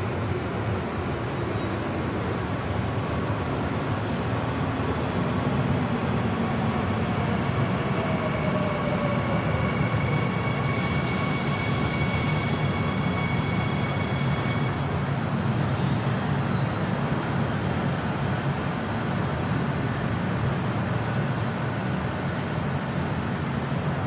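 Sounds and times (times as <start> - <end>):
subway train rumbling: 0.0 - 24.0
hiss: 10.6 - 12.8.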